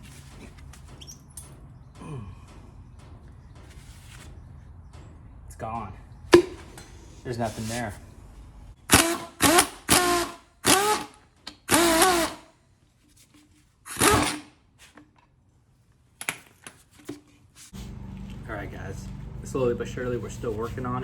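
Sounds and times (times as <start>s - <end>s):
power tool motor whine: 8.9s - 12.4s, 13.9s - 14.4s.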